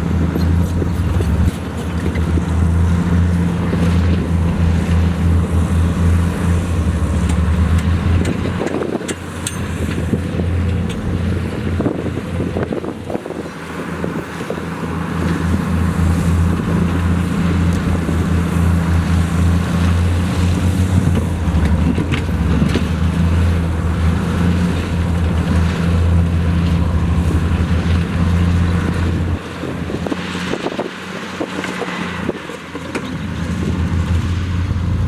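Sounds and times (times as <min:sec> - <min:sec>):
heavy diesel engine running: 0:00.0 - 0:35.0.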